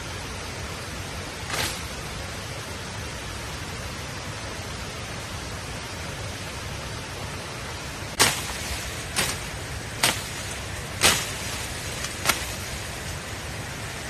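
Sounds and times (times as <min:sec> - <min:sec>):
steady hiss: 0:00.0 - 0:14.0
firewood being struck: 0:01.5 - 0:02.0, 0:08.2 - 0:13.0.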